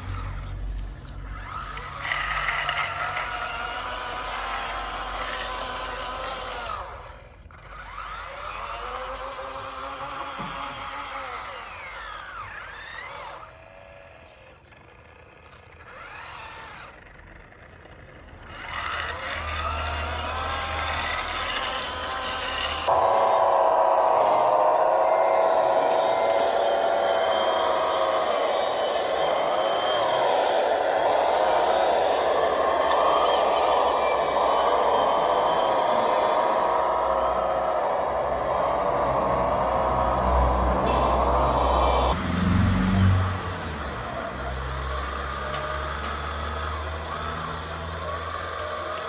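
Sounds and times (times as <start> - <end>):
electric motors whining: 0.0 - 49.0
loud steady whine: 16.9 - 49.0.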